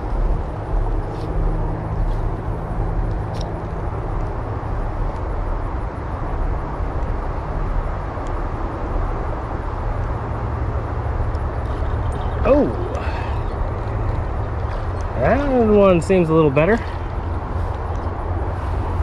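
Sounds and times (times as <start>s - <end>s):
highway traffic: 0.0s - 19.0s.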